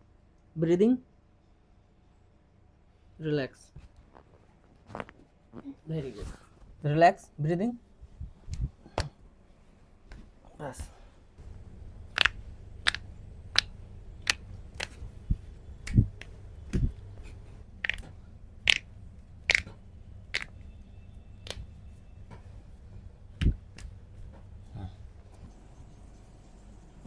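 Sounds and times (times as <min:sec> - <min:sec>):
joint cracks and pops: 0:12.1 - 0:15.0, 0:17.8 - 0:18.9, 0:19.5 - 0:20.6, 0:21.4 - 0:21.7.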